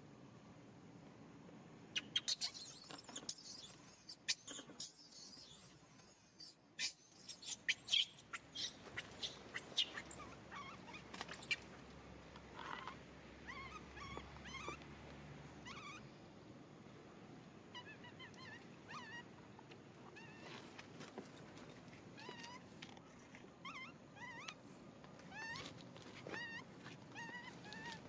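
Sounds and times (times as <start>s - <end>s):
baby monkey crying: 6.4s - 11.6s, 12.7s - 14.8s, 15.6s - 16.1s, 17.7s - 19.3s, 26.3s - 28.0s.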